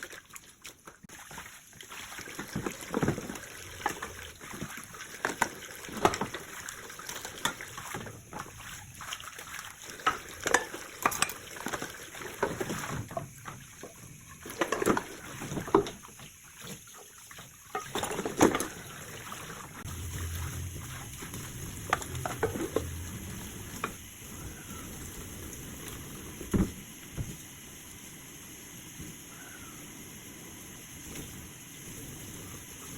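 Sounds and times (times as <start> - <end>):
water splashing: 0.0 - 26.7
dishes and utensils clattering: 5.2 - 6.5, 10.0 - 13.6, 14.4 - 16.0, 17.7 - 19.0, 19.9 - 24.0.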